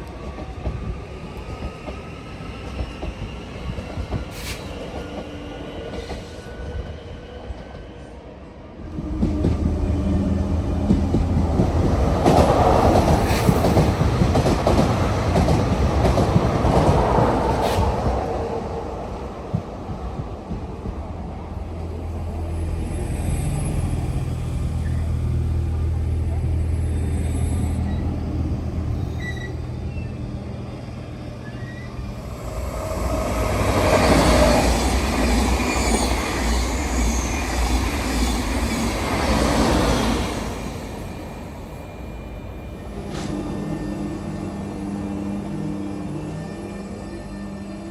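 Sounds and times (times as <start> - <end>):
train rumble: 8.7 - 47.9
train wheels clacking: 10.8 - 18.3
high wheel squeals: 26.6 - 39.1.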